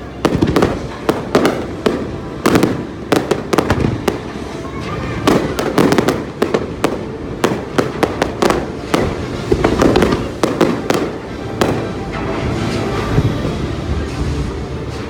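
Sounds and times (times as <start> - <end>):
fireworks bangs and cracks: 0.0 - 15.0.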